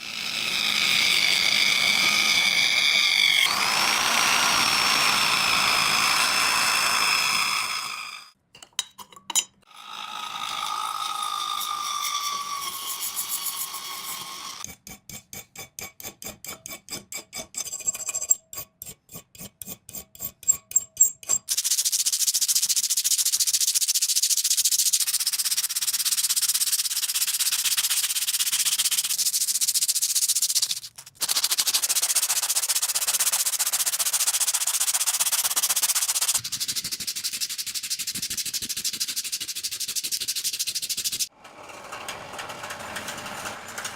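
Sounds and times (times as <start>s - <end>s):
power tool grinding: 0.0s - 8.4s, 9.6s - 14.6s, 30.7s - 36.4s
rhythmic scraping strokes: 21.3s - 41.3s
sanding hiss: 21.5s - 41.3s.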